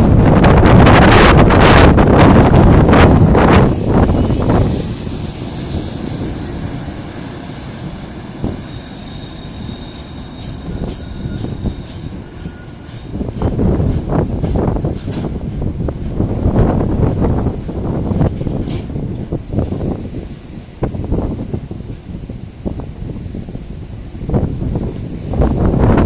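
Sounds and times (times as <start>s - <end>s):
wind buffeting microphone: 0.0s - 7.0s, 10.6s - 26.0s
train rolling slowly: 0.0s - 26.0s
train wheels squealing: 4.1s - 15.2s.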